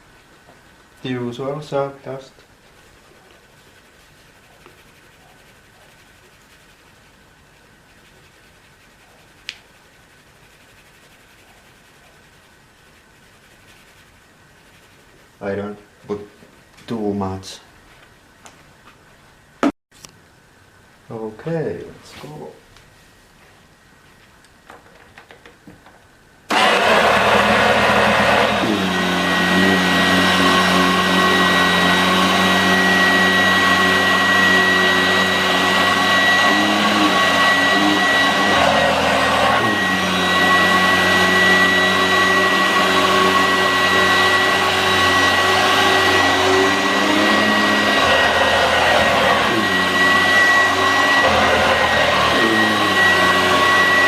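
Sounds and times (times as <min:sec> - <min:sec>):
vacuum cleaner switch: 0:26.5 - 0:28.9
vacuum cleaner whining: 0:26.5 - 0:54.0.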